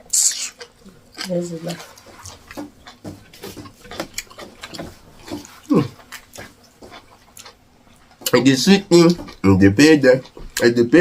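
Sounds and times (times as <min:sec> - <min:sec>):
wet lip smacks and chewing: 0:00.1 - 0:08.4.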